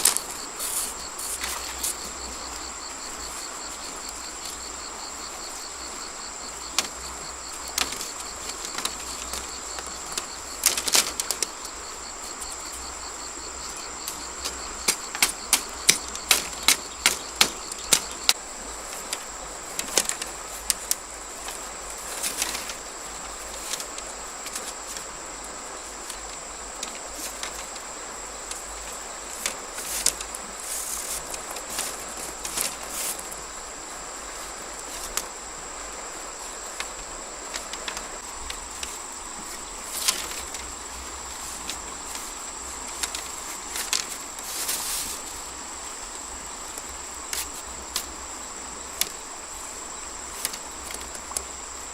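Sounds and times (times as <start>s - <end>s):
high drone of insects: 0.0s - 51.9s
sharp clicks and knocks: 14.0s - 18.4s.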